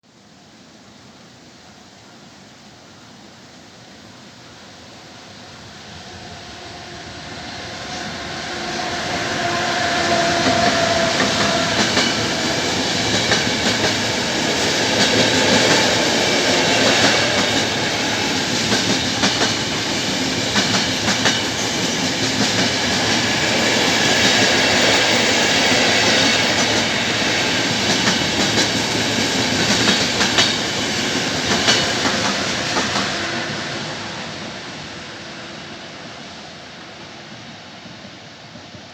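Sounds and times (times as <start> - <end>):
train passing at speed: 0.3 - 38.9.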